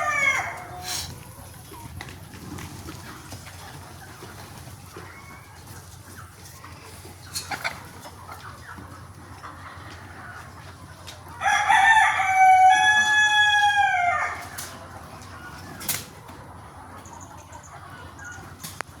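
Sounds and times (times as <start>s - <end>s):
rooster crowing: 0.0s - 0.9s, 11.4s - 14.5s.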